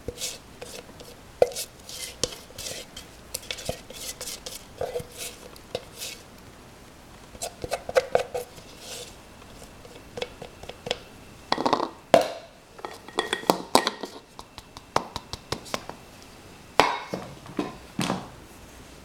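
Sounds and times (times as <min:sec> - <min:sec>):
utensil clinking against bowl: 0:12.8 - 0:15.7.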